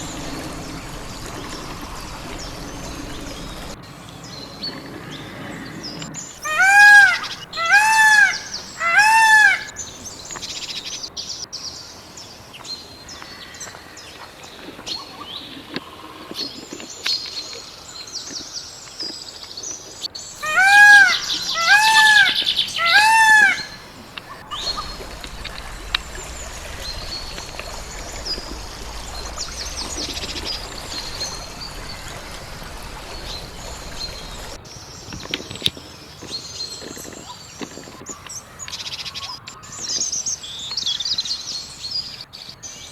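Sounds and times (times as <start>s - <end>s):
peacock calling loudly: 0.0s - 3.8s, 6.4s - 10.8s, 20.4s - 34.6s
small birds chirping faintly: 0.0s - 11.0s, 20.2s - 38.8s.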